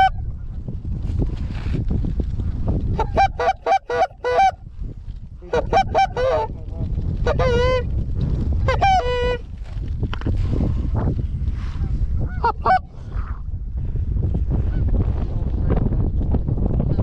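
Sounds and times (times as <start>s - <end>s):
wind rumble on microphone: 0.0s - 17.0s
goose honking and clucking: 3.0s - 4.6s, 5.4s - 6.6s, 7.2s - 7.9s, 8.7s - 9.4s, 12.3s - 12.9s.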